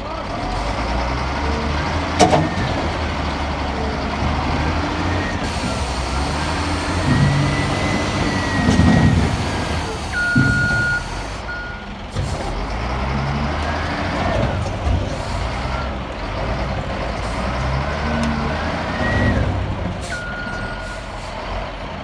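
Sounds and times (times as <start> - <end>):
heavy diesel machinery rumbling: 0.0 - 22.0
reversing alarm beep: 10.1 - 11.8, 20.1 - 21.0.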